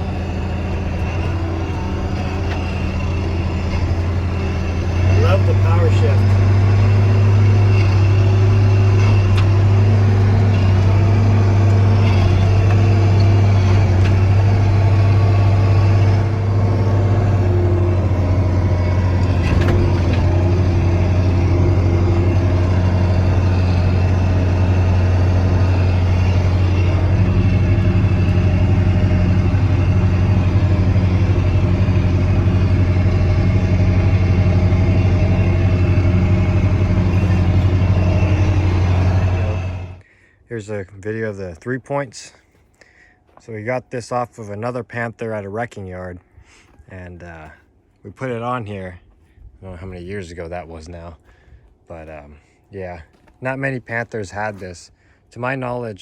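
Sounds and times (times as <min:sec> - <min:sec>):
tractor diesel engine running: 0:00.0 - 0:40.1.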